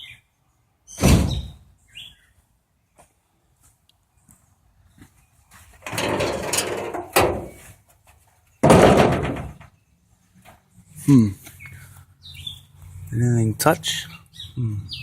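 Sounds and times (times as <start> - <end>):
car hood slammed shut: 1.0 - 1.5, 8.6 - 9.6
car hood scraping shut: 5.8 - 7.6.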